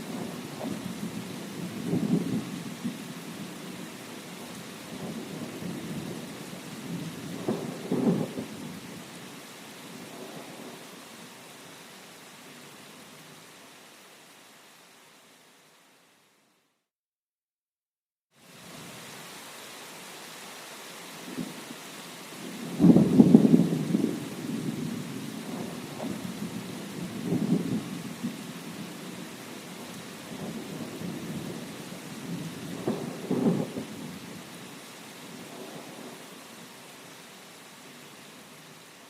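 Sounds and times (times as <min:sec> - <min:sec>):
steady rain hiss: 0:00.0 - 0:16.9, 0:18.3 - 0:39.0
rolling thunder: 0:00.1 - 0:03.5, 0:05.0 - 0:08.7, 0:22.5 - 0:34.3.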